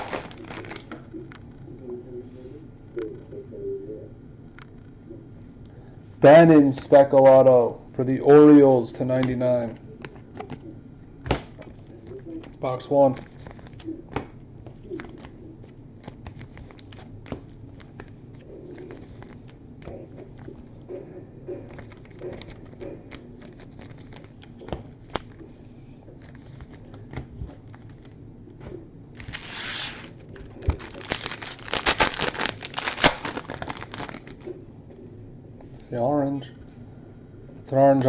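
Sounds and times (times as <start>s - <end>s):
wrapper tearing and crinkling: 0.0s - 1.0s, 16.2s - 17.1s, 23.4s - 24.5s, 29.2s - 34.5s.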